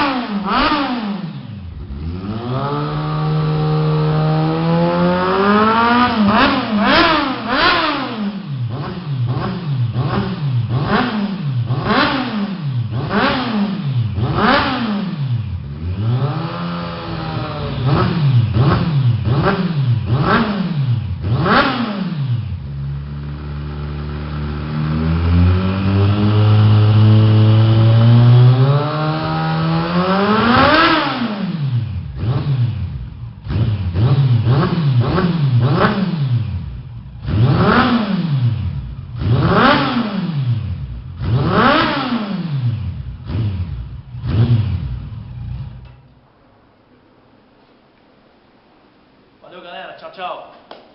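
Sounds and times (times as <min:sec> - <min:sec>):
motorcycle engine revving: 0:00.0 - 0:46.1.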